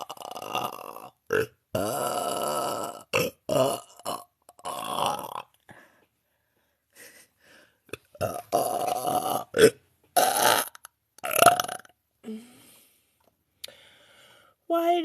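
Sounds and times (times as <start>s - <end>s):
woman belching: 0.0s - 5.5s, 8.2s - 12.0s.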